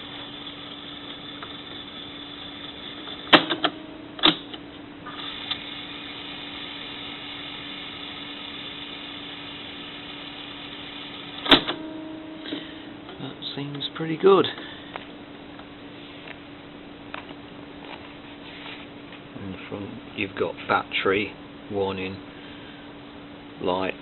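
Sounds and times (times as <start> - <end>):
tape transport winding hum: 0.0 - 16.4.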